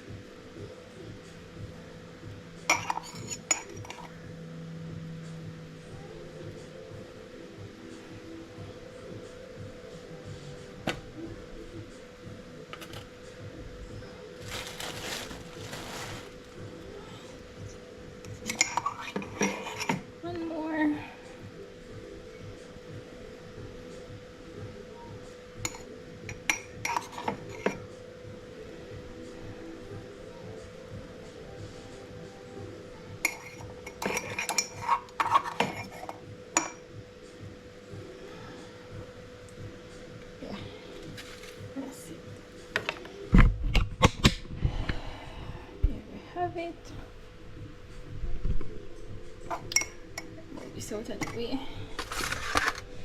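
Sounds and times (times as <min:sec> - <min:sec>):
faint steady hum: 0:00.0 - 0:53.0
utensils clinking against dishes: 0:02.7 - 0:04.1, 0:18.2 - 0:20.0, 0:25.7 - 0:27.8, 0:33.2 - 0:36.8.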